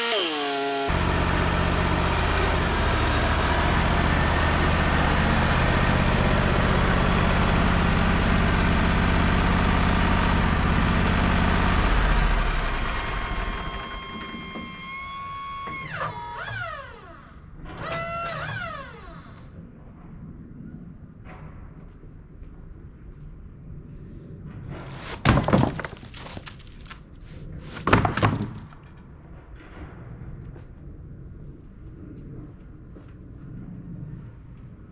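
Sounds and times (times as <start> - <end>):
high whine from sawmill: 0.0 - 19.5
sawmill droning through wood: 0.0 - 19.6.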